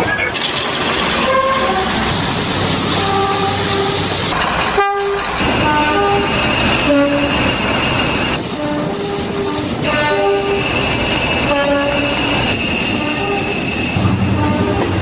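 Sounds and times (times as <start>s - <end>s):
train running: 0.0s - 15.0s
train horn: 1.2s - 2.0s, 3.0s - 4.1s, 4.7s - 6.3s, 6.9s - 7.3s, 8.5s - 10.6s, 11.5s - 12.2s, 12.9s - 15.0s.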